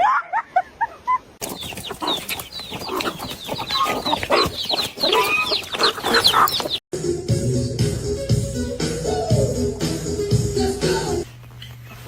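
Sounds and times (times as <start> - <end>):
chickens clucking: 1.4 - 6.8.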